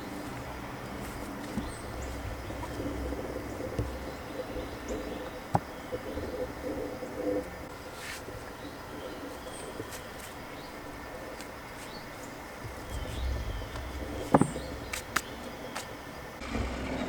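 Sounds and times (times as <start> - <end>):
steady low rumble: 0.0 - 7.9, 12.4 - 17.0
faint bird chirps: 0.0 - 16.2.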